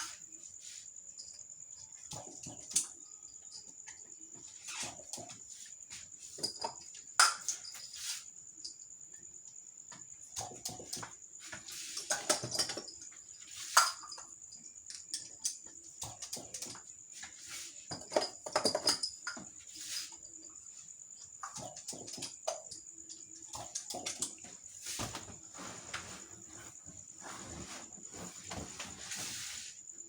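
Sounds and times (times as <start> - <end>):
crickets trilling: 0.0 - 30.0
rustling: 24.7 - 29.8.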